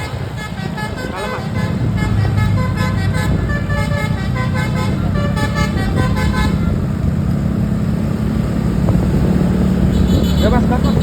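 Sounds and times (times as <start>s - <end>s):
bus musical horn tune: 0.0s - 6.9s, 9.8s - 11.0s
bus engine running: 0.0s - 11.0s.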